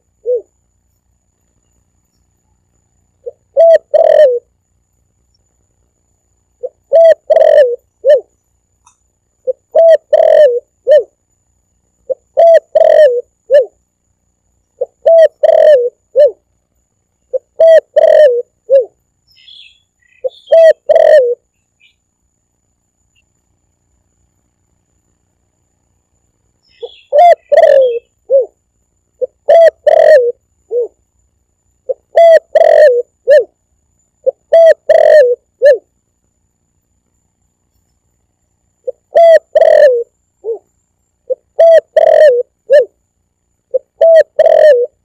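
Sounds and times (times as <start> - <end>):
dove cooing: 0.0 - 0.6, 3.2 - 4.5, 6.6 - 8.3, 9.4 - 11.2, 12.0 - 13.8, 14.8 - 16.4, 17.3 - 19.0, 20.2 - 21.4, 26.8 - 28.6, 29.2 - 31.0, 31.8 - 33.6, 34.2 - 35.9, 38.8 - 40.7, 41.3 - 43.0, 43.7 - 45.0
faint bird chirps: 0.0 - 22.1, 23.0 - 25.2, 25.8 - 31.1.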